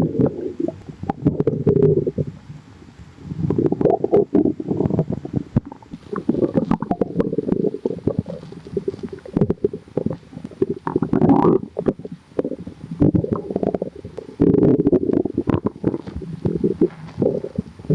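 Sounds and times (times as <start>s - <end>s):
stomach growling: 0.0s - 17.9s.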